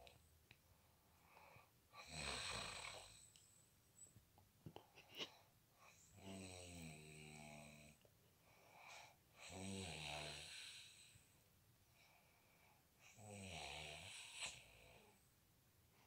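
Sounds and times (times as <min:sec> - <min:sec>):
man snoring: 0:02.0 - 0:03.3, 0:05.9 - 0:08.0, 0:09.4 - 0:11.2, 0:13.1 - 0:15.2.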